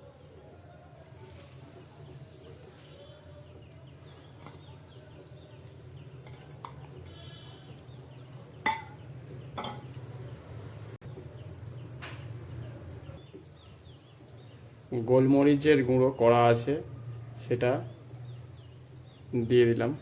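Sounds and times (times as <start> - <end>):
metal pot and utensils clinking: 4.3 - 4.8, 5.7 - 7.2, 8.6 - 10.1.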